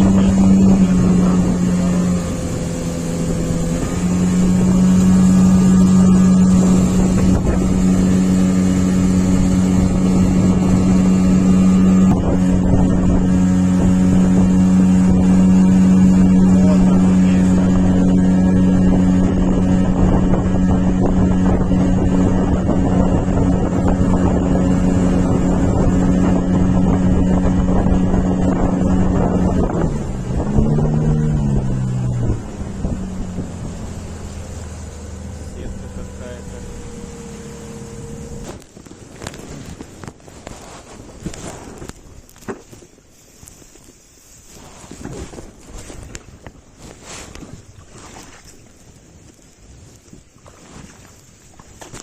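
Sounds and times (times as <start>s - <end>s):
outboard motor running: 0.0s - 52.0s.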